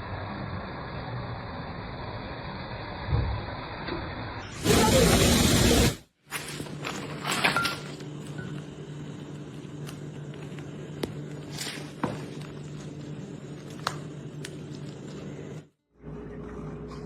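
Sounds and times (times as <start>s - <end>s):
low mechanical hum: 0.0s - 17.0s.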